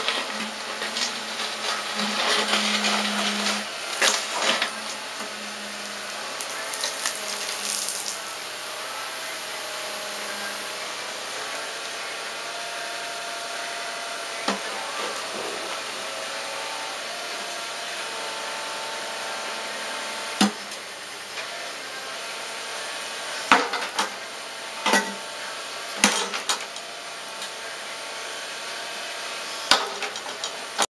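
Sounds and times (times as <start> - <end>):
excavator diesel engine running: 0.0 - 22.6.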